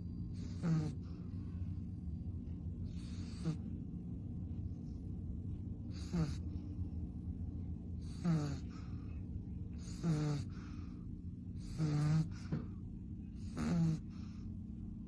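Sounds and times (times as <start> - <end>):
dog snoring: 0.0 - 1.8, 2.8 - 3.8, 5.9 - 6.8, 7.9 - 14.5
steady low hum: 0.0 - 15.0.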